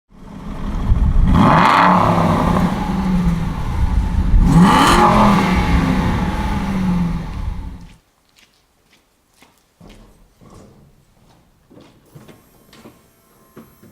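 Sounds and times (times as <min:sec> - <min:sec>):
car engine revving: 0:00.1 - 0:08.0.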